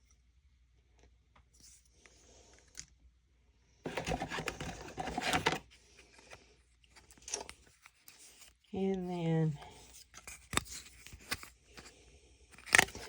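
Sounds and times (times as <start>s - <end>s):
plastic packaging crinkling: 3.9s - 5.6s, 12.6s - 13.0s.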